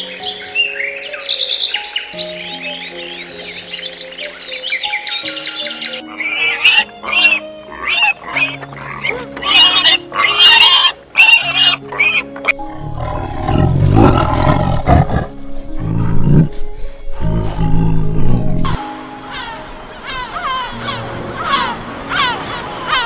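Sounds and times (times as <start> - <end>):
background music: 0.0 - 23.0.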